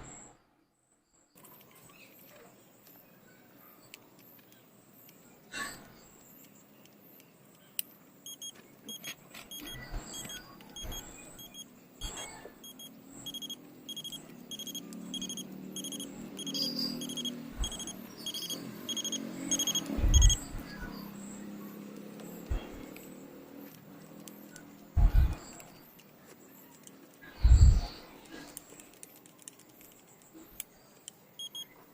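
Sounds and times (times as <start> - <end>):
alarm clock beeping: 8.2 - 21.2, 31.4 - 31.7
loud low thump: 25.0 - 25.5.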